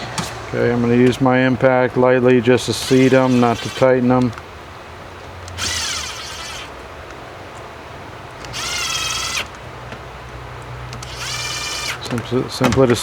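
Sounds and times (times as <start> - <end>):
impact driver motor whine: 2.6 - 4.3, 5.4 - 6.8, 8.4 - 9.6, 11.0 - 12.2.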